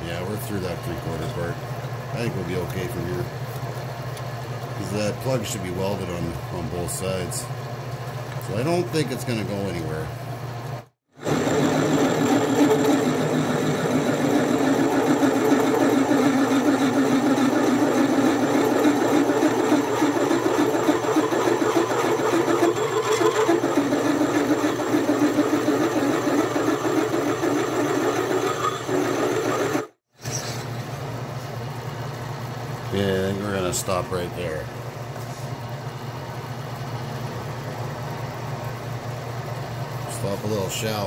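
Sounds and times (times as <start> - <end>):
drill bit cutting steel: 11.2 - 29.8.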